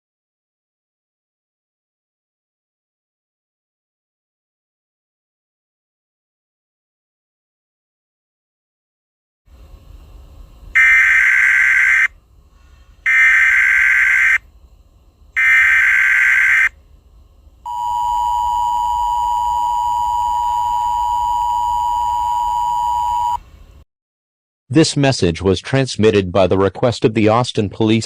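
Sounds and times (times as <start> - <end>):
digital data bursts: 10.8 - 12.1, 13.1 - 14.4, 15.4 - 16.7
two-tone attention signal: 17.7 - 23.4.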